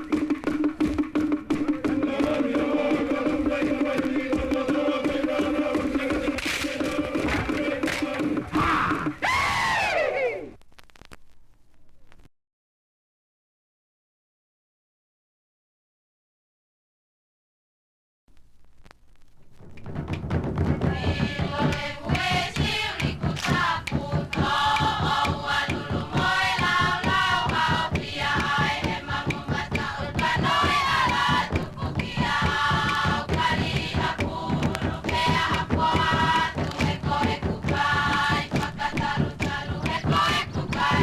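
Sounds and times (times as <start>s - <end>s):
fast drumming: 0.0s - 9.8s, 19.2s - 41.0s
voices chanting in unison: 0.0s - 10.6s, 20.7s - 41.0s.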